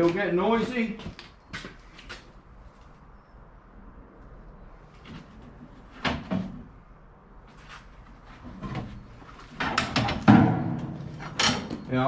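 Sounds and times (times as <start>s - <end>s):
steel bars clanking together: 9.7s - 11.9s.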